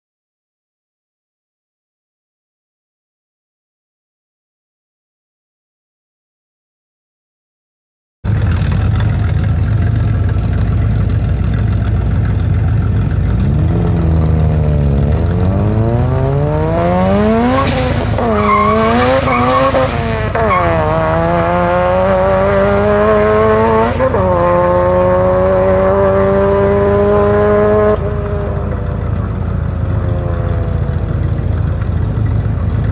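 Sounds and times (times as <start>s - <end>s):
tire squeal: 8.3s - 21.4s
car engine accelerating: 8.3s - 32.9s.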